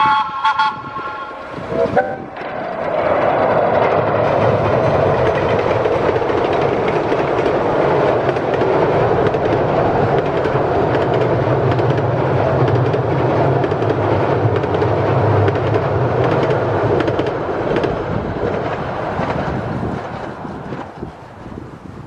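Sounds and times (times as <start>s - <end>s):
steam locomotive exhaust: 0.0s - 2.6s
wheels clattering over rail joints: 1.4s - 22.0s.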